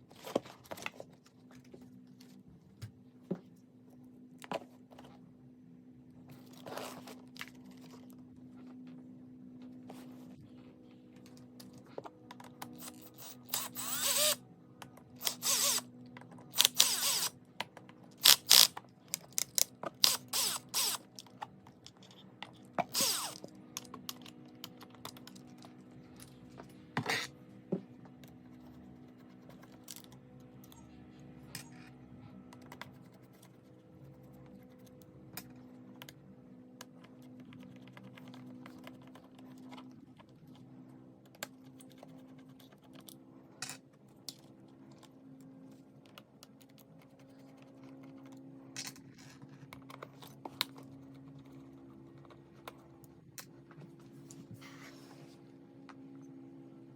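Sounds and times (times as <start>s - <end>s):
small tools scraping and rattling: 47.7s - 50.5s.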